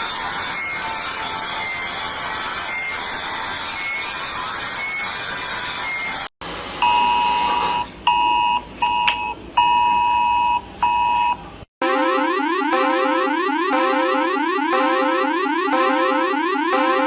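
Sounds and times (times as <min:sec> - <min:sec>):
two-tone electronic alert beeps: 0:08.1 - 0:17.0.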